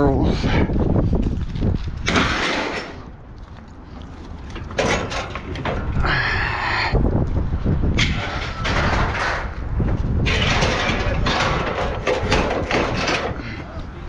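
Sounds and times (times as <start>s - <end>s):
scrap metal scraping and clanking: 2.0s - 3.1s, 4.5s - 6.0s, 8.0s - 13.7s.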